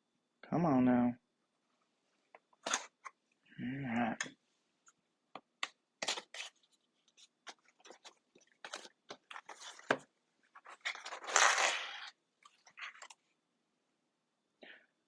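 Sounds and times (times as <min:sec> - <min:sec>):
knife scraping cardboard and tape: 0:10.7 - 0:12.1
cardboard box tearing open: 0:10.8 - 0:12.1.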